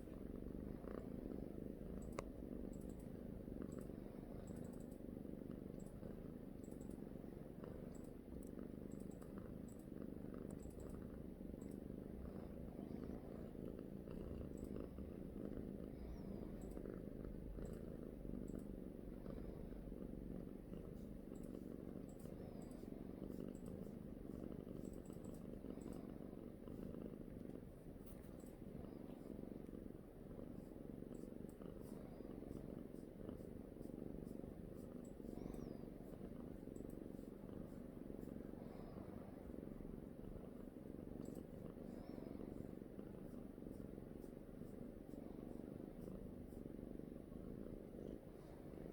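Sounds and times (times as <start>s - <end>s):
cat purring: 0.0s - 48.9s
faint small ticks: 1.8s - 11.9s, 14.1s - 15.3s, 16.0s - 19.2s, 21.0s - 28.6s, 31.1s - 33.4s, 34.2s - 38.3s, 41.2s - 42.2s.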